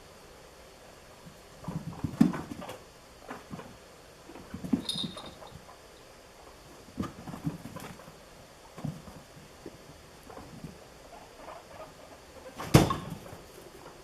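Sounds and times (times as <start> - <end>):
guinea pig feet pattering: 6.4 - 14.0
guinea pig squeak: 11.1 - 12.6.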